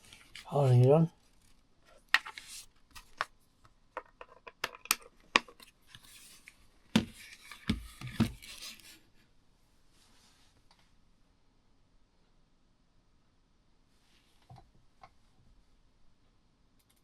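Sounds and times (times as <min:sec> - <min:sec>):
heavy thumps: 0:07.0 - 0:08.4.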